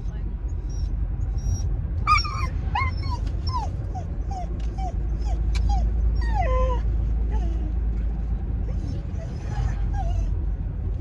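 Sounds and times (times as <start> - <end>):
car rumble: 0.0 - 11.0
dog whimpering and whining: 0.6 - 7.7, 8.6 - 10.4.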